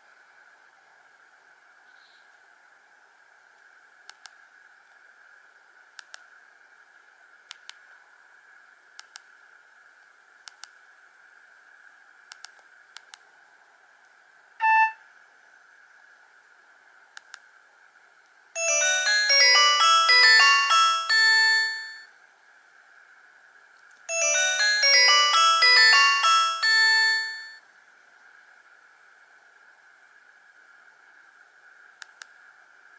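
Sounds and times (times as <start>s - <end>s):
electronic phone ringtone: 14.6s - 15.0s, 18.6s - 22.1s, 24.1s - 27.6s
short phone beep: 14.6s - 15.0s.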